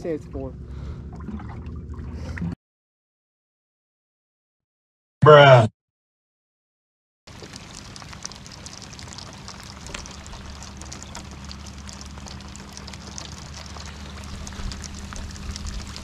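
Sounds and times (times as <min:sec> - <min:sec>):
low steady hum: 0:00.0 - 0:02.6, 0:07.3 - 0:16.0
rain falling: 0:07.3 - 0:16.0.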